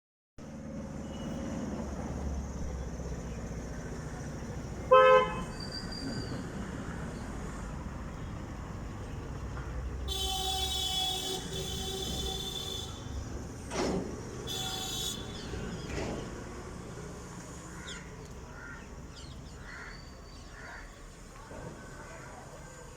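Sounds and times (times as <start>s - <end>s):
outdoor background noise: 0.4s - 22.9s
short loud horn toot: 10.1s - 13.1s, 14.5s - 15.5s
quieter horn-like tone: 10.1s - 13.2s, 14.5s - 15.4s.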